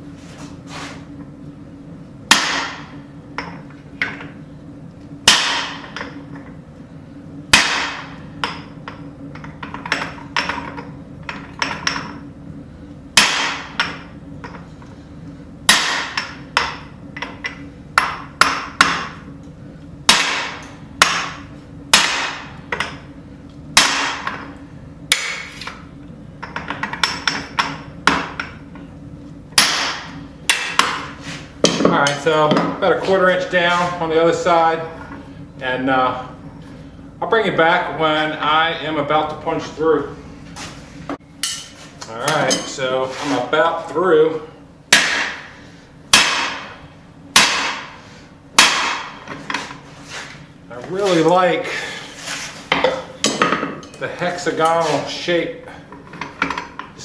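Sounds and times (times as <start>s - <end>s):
hammer striking a steel punch: 2.3s - 4.2s, 5.2s - 6.2s, 7.5s - 8.7s, 13.2s - 14.6s, 15.7s - 19.2s, 20.1s - 23.0s, 23.8s - 24.5s, 25.1s - 25.8s, 29.6s - 32.8s, 44.9s - 45.5s, 46.1s - 48.0s, 48.6s - 49.3s.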